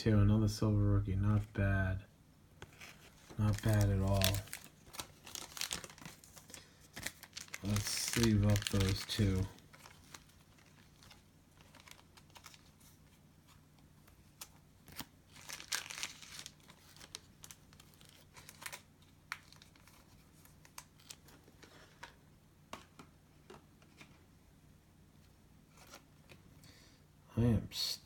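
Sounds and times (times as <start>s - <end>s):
plastic card sleeves crinkling: 2.6s - 24.2s, 25.7s - 26.5s.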